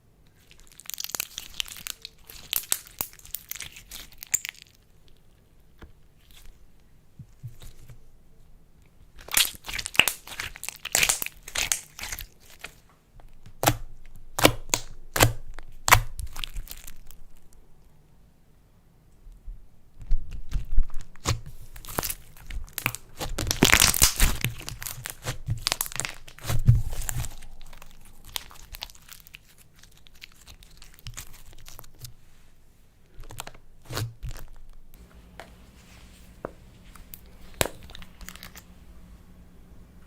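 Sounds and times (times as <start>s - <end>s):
slime crackling and popping: 0.5s - 5.2s, 9.2s - 12.8s, 20.3s - 32.1s, 37.1s - 38.7s.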